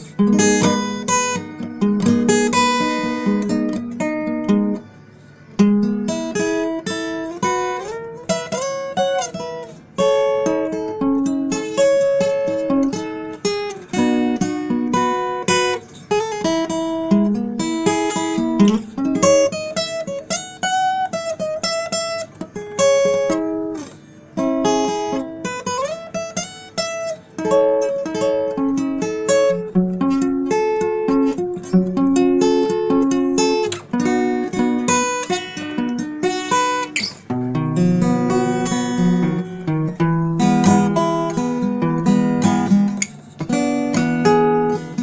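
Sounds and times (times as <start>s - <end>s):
acoustic guitar playing: 0.0s - 45.0s.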